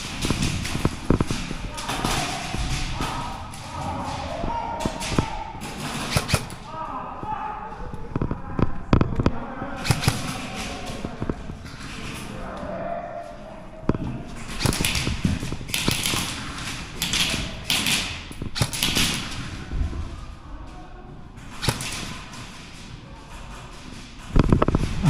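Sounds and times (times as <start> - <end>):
airsoft guns firing: 0.0 - 6.7, 8.1 - 12.3, 14.4 - 19.6, 21.5 - 22.6.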